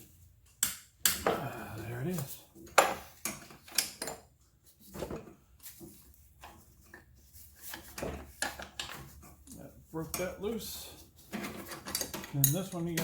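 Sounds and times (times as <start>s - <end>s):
wrench and metal fittings clinking: 11.6s - 13.0s.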